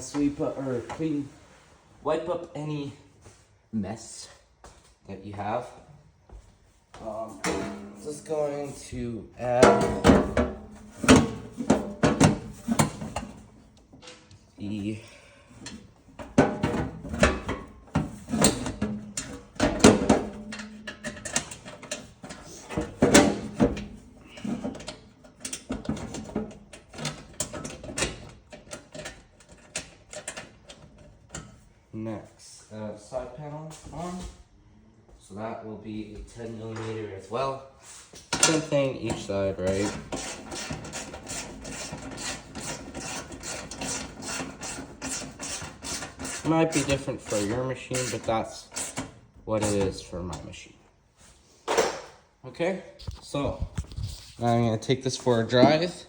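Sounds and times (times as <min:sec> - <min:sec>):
sheet metal knocks and clatters: 0:07.4 - 0:08.3, 0:09.5 - 0:14.1, 0:15.6 - 0:30.4.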